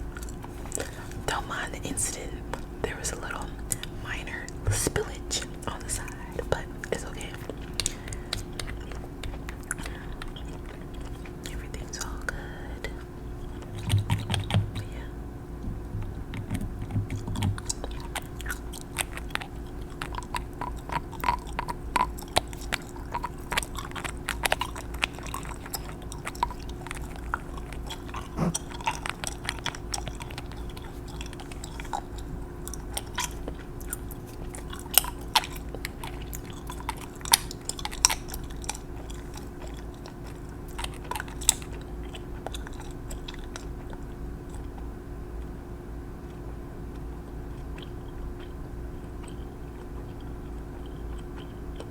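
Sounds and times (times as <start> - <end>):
steady low hum: 0.0 - 51.9.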